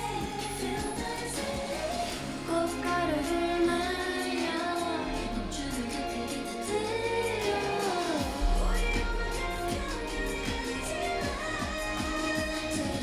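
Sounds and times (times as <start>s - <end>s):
song with singing and bass: 0.0s - 13.0s.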